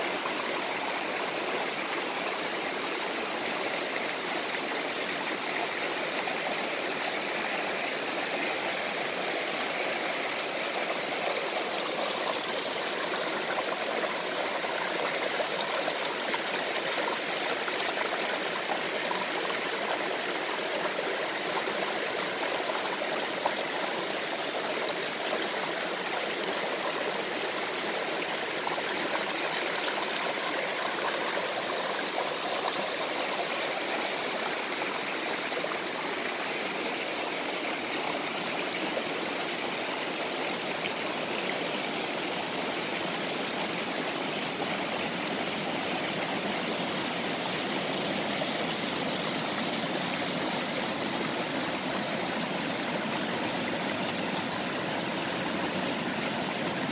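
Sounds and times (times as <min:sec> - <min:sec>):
water rushing over rocks: 0:00.0 - 0:56.9.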